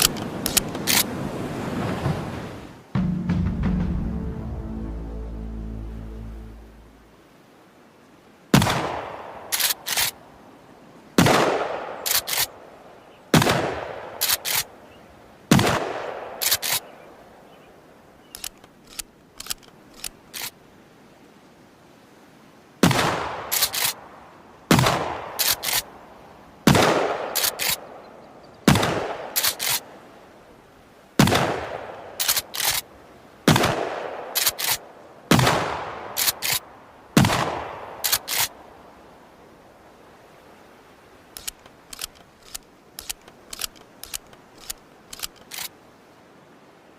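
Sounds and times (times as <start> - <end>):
light clicks: 0.0 - 1.1, 18.3 - 20.6, 41.4 - 45.7
shotgun pump racking clicks: 0.0 - 1.1, 9.5 - 10.2, 12.1 - 12.5, 14.2 - 14.7, 16.4 - 16.8, 18.3 - 20.5, 23.5 - 24.0, 25.4 - 25.9, 27.4 - 27.8, 29.4 - 29.8, 32.2 - 32.8, 34.4 - 34.8, 36.2 - 36.6, 38.0 - 38.5, 41.4 - 45.7
shotgun shots: 11.2 - 12.5, 13.3 - 14.7, 15.5 - 16.8, 26.7 - 27.8, 28.7 - 29.8, 31.2 - 32.8, 33.5 - 36.6, 37.2 - 38.5.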